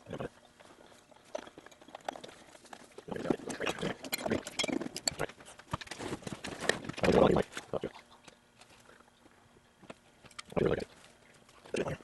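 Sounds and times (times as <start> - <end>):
tools and parts clicking: 3.6 - 6.0.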